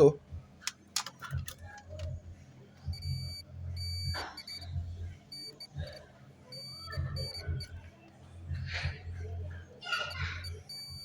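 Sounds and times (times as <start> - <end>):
multimeter continuity beeping: 2.9 - 7.8, 10.0 - 11.0.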